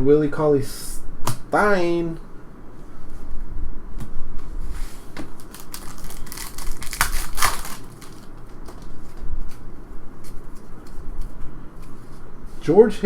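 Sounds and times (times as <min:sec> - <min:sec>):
foil wrapper crinkling: 0:05.3 - 0:08.9.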